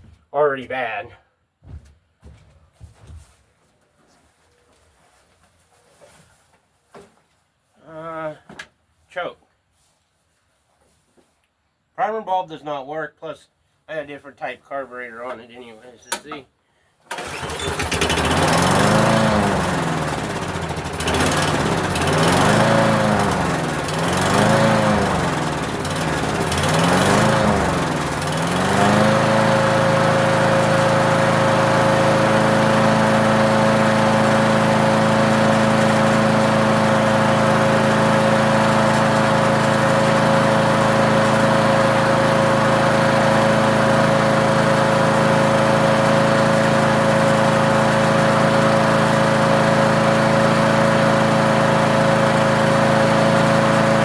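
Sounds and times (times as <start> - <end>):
lawn mower engine surging: 17.1 - 54.0.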